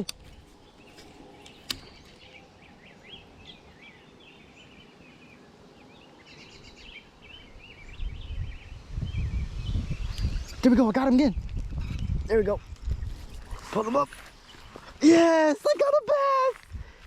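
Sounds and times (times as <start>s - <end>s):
small birds chirping: 0.0s - 17.0s
sharp click: 1.4s - 2.1s.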